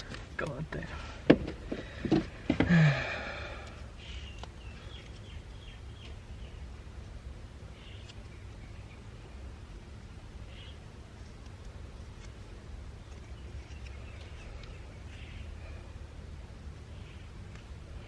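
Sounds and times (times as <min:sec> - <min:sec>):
low background hum: 0:00.0 - 0:18.0
man sighing: 0:01.9 - 0:03.8.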